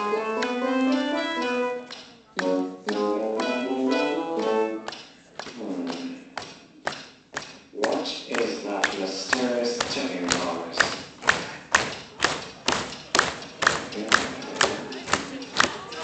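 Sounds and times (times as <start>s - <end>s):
quick-noted song playback: 0.0s - 16.0s
sharp knocks: 4.9s - 16.0s.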